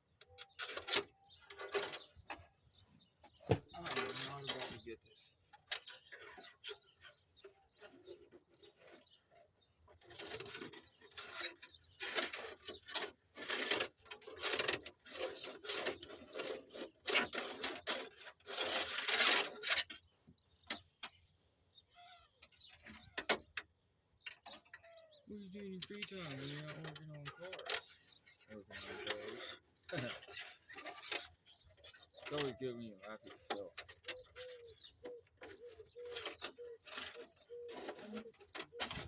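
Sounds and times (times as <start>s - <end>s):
hands rubbing and scraping wiring: 0.2s - 21.2s, 25.7s - 39.0s.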